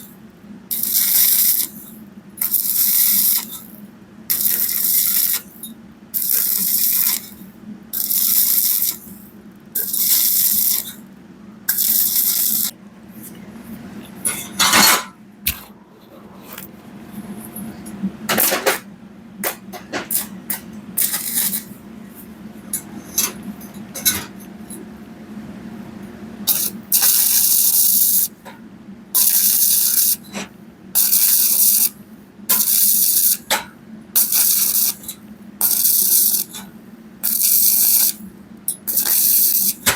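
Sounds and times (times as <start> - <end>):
welding arc crackling and hissing: 0.0 - 11.1, 11.7 - 12.7, 19.4 - 21.8, 26.5 - 28.4, 29.2 - 30.4, 31.0 - 33.6, 34.2 - 36.6, 37.2 - 39.9.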